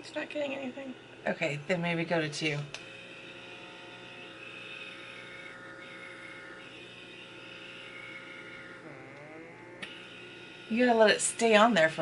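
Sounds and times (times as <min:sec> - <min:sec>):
small electric motor whining: 0:00.0 - 0:12.0.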